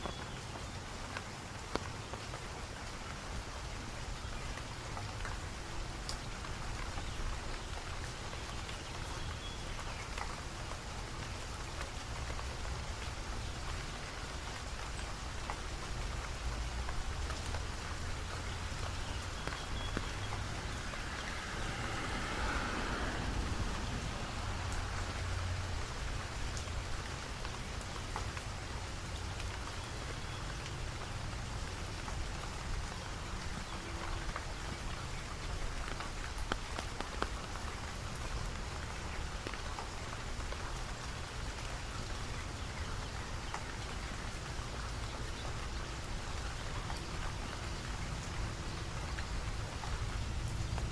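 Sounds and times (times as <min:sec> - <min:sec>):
sharp drip ticks: 0:00.0 - 0:50.9
steady rain hiss: 0:00.0 - 0:50.9.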